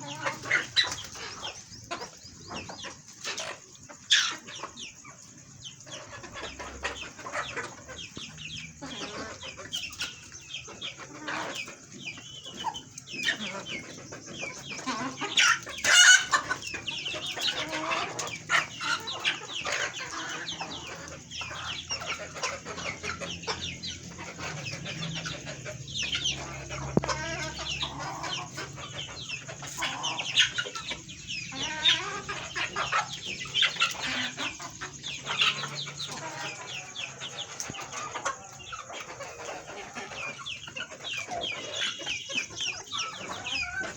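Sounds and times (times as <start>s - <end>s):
chickens clucking: 0.0s - 43.9s
loud chicken call: 14.8s - 20.9s.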